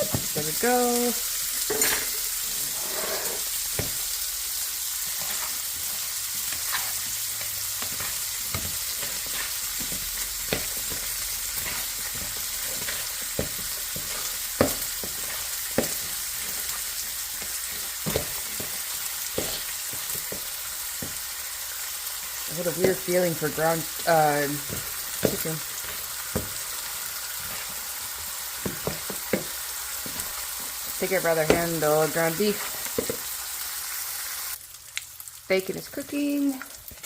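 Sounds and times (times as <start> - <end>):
bacon sizzling in a pan: 0.0 - 37.0
sharp pops of frying fat: 3.6 - 4.1, 5.4 - 21.4, 23.8 - 30.8.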